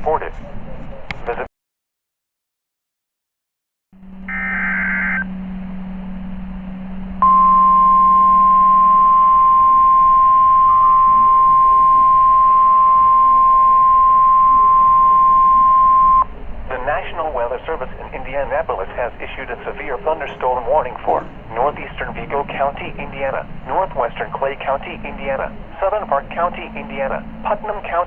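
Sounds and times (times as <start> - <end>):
steady single-pitch alarm tone: 4.0 - 16.3
low hum: 4.0 - 28.0
warbling digital data tones: 4.3 - 5.3
radio hiss: 16.7 - 28.0.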